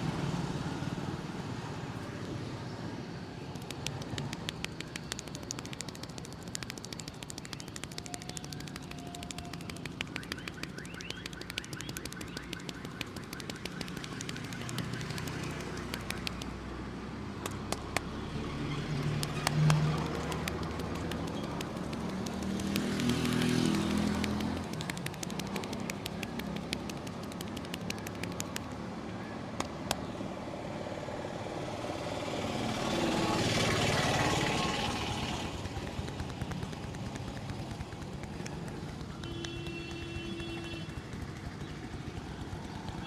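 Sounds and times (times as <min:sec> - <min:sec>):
street traffic: 0:00.0 - 0:43.0
motor vehicle passing: 0:03.5 - 0:43.0
hand tapping on head: 0:03.6 - 0:16.6, 0:17.4 - 0:18.1, 0:19.0 - 0:28.8, 0:35.7 - 0:43.0.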